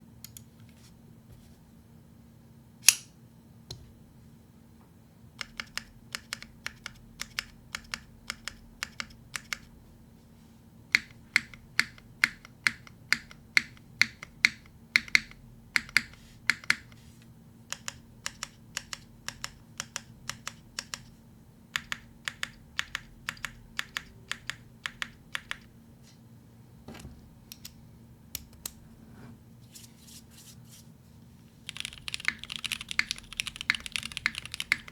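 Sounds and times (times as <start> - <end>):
mechanical keyboard typing: 5.4 - 9.7, 10.9 - 16.9, 17.7 - 21.1, 21.8 - 25.7, 31.6 - 34.9.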